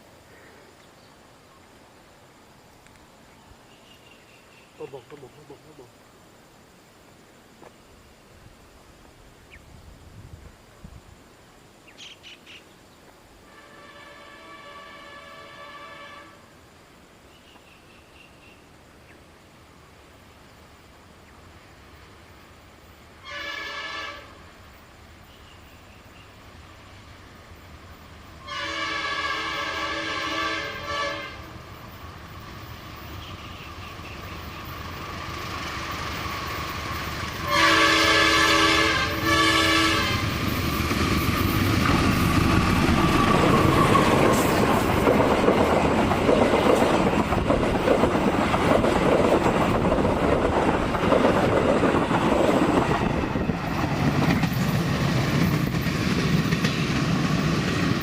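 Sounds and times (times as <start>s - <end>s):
locomotive horn blasts: 13.5s - 16.5s, 23.2s - 24.4s, 28.4s - 31.6s, 37.4s - 40.3s
train engine and wheel clatter: 24.4s - 58.0s.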